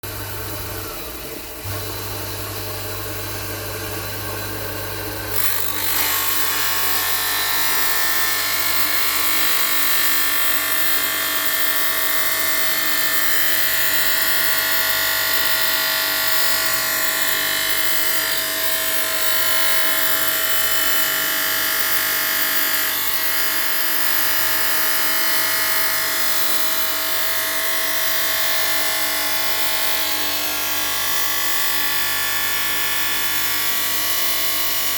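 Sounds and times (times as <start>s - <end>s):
rotary tool grinding stone: 5.3s - 23.9s.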